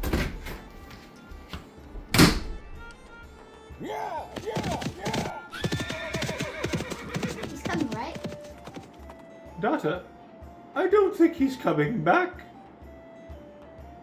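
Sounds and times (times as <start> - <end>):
background music: 0.0 - 14.0
loud thunk: 2.0 - 3.0
hooves clip-clopping: 4.2 - 10.0
horse whinnying: 4.4 - 7.7.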